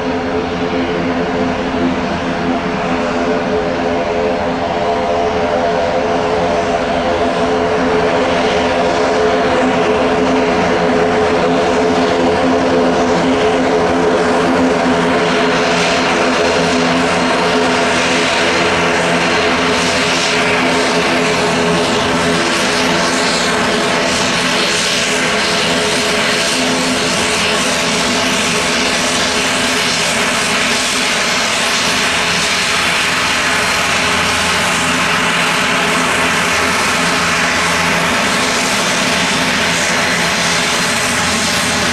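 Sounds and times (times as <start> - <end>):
aircraft turbine engines running: 0.0 - 41.9.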